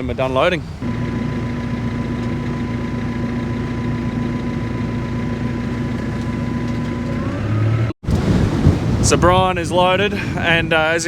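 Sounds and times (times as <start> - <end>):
engine droning steadily: 0.0 - 8.0.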